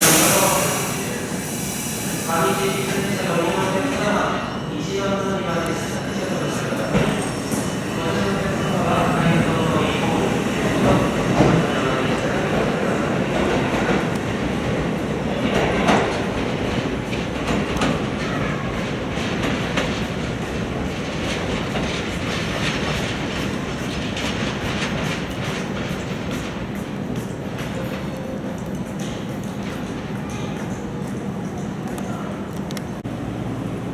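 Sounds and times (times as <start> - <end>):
train running rumble: 0.0 - 33.9
wheels clicking over rail joints: 13.4 - 33.0.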